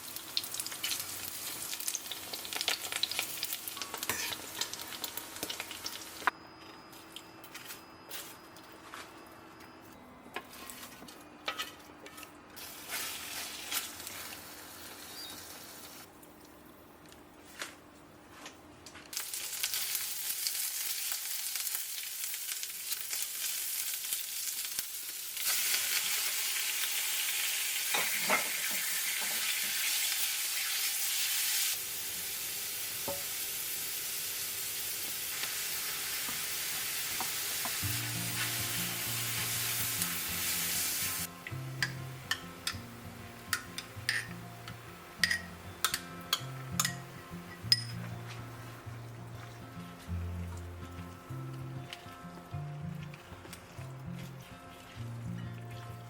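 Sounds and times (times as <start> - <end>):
food sizzling in a pan: 0.0 - 6.3, 12.6 - 16.1, 19.2 - 56.0.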